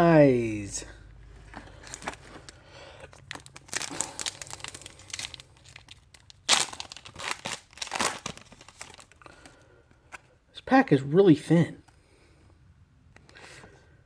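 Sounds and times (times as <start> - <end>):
foil wrapper crinkling and tearing: 1.6 - 9.6.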